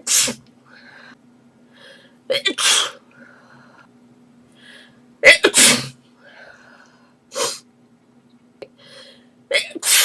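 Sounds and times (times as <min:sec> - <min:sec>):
girl sneezing: 0:02.4 - 0:03.0, 0:05.3 - 0:06.0, 0:09.6 - 0:10.0.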